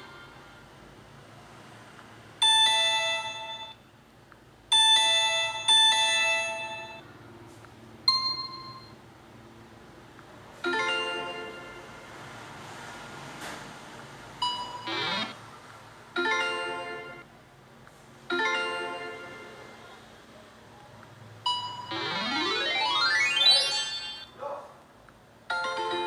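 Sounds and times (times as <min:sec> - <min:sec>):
phone ringtone: 0:02.4 - 0:03.8, 0:04.7 - 0:07.0, 0:08.1 - 0:09.0, 0:10.6 - 0:12.1, 0:14.4 - 0:15.4, 0:16.2 - 0:17.3, 0:18.3 - 0:19.7, 0:21.5 - 0:24.4, 0:25.5 - 0:26.0.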